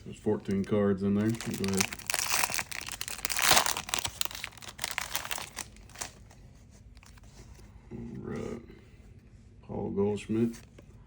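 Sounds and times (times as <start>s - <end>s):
foil wrapper tearing and crinkling: 0.4s - 6.4s.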